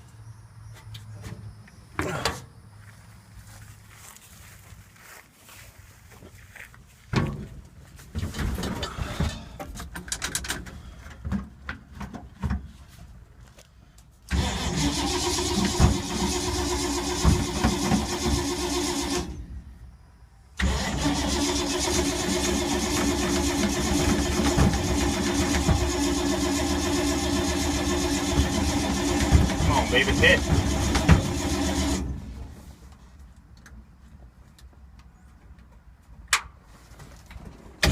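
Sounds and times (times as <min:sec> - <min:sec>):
starter cranking engine: 0:14.3 - 0:19.4, 0:20.6 - 0:32.5.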